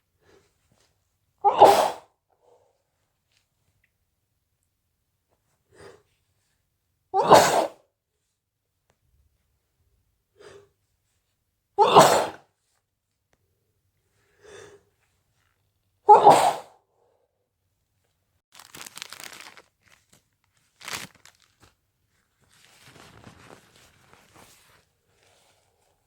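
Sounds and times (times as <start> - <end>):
person sneezing: 1.4 - 2.1, 7.2 - 7.8, 11.8 - 12.5, 16.1 - 16.8
sharp nasal puff: 1.5 - 2.1, 16.1 - 16.7
paper tissue rustling: 18.5 - 25.9.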